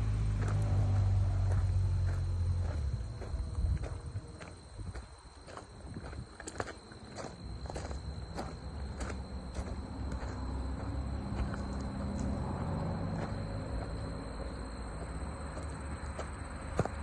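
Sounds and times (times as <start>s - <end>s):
low rumble: 0.0s - 5.0s
insects trilling: 0.1s - 17.0s.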